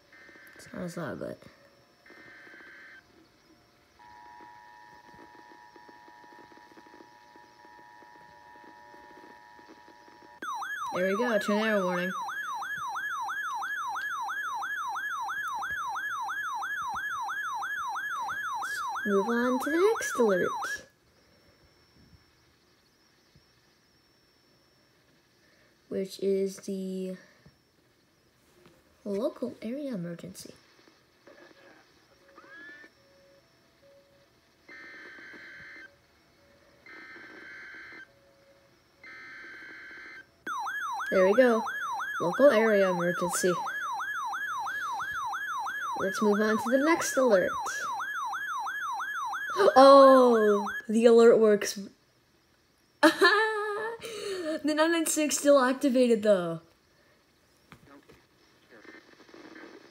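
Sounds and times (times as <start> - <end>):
warbling alert siren: 0.0 - 20.9, 32.2 - 51.6
digital data bursts: 2.0 - 20.9, 39.0 - 51.6.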